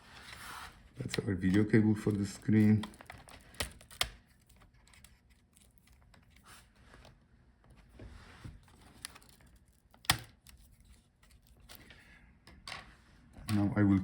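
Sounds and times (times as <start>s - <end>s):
small plastic parts clicking: 1.0s - 6.4s.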